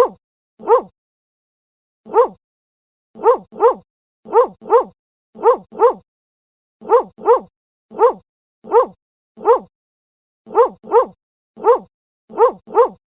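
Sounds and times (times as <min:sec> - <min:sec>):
dog barking: 0:00.0 - 0:00.9, 0:02.1 - 0:02.4, 0:03.2 - 0:06.0, 0:06.8 - 0:09.7, 0:10.5 - 0:13.0.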